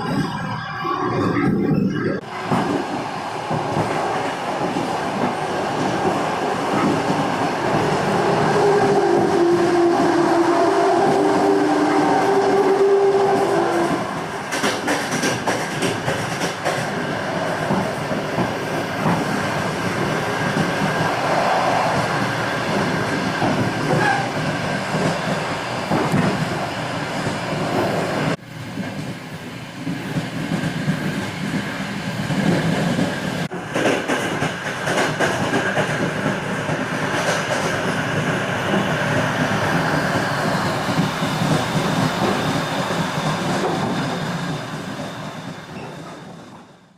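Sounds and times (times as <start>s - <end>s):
train wheels clickety-clack: 2.2s - 21.2s, 21.9s - 46.9s
steady howling tone: 19.9s - 24.0s.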